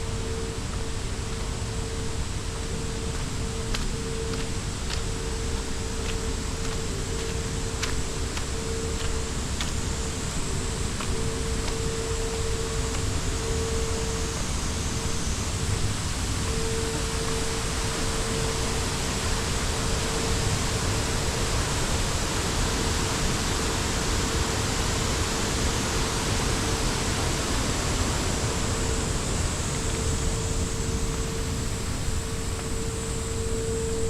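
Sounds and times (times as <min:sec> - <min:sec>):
faint high whine: 0:00.0 - 0:34.0
mid-pitched hum: 0:00.0 - 0:34.0.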